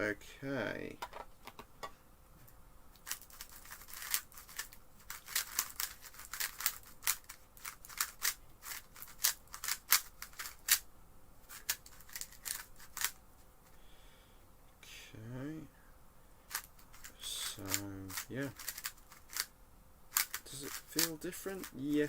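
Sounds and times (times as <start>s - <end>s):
puzzle cube plastic clicks: 3.0s - 10.8s, 11.5s - 13.2s, 16.5s - 19.5s, 20.2s - 22.0s.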